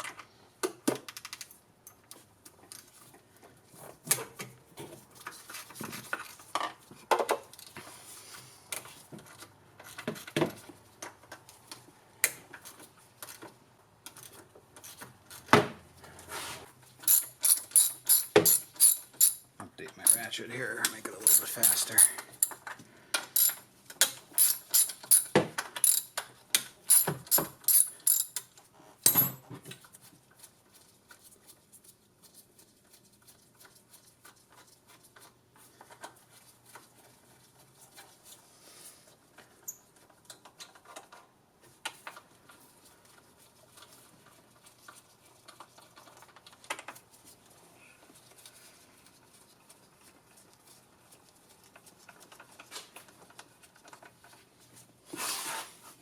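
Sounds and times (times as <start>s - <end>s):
tool handling sounds: 16.3s - 26.2s, 26.8s - 28.4s
socket ratchet clicking: 17.1s - 19.4s, 23.4s - 23.6s, 24.4s - 26.1s, 26.9s - 28.4s.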